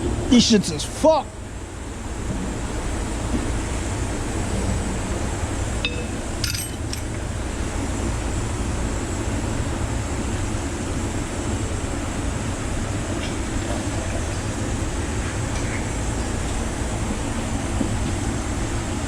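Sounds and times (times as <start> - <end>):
low rumbling background noise: 0.0 - 19.0
light metallic clinks: 5.8 - 7.1.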